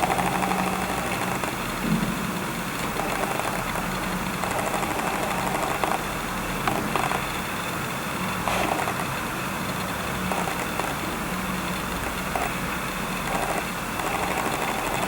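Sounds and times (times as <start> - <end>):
lens autofocus motor: 8.4 - 9.1, 9.8 - 11.0.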